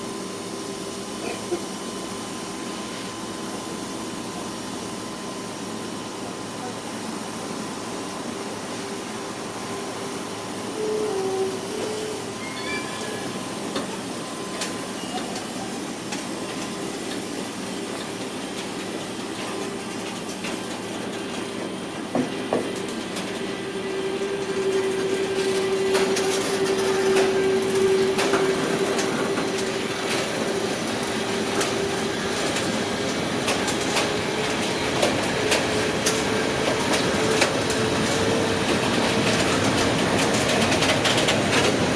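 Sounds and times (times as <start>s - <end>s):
freight train wheels clicking: 13.6s - 41.9s.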